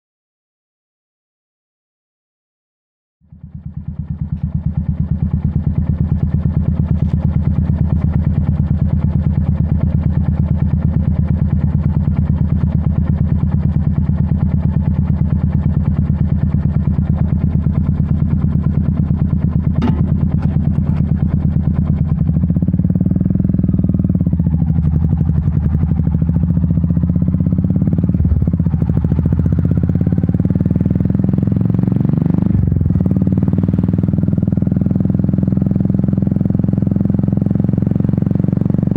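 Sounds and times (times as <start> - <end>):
motorcycle engine idling: 3.2 - 38.9.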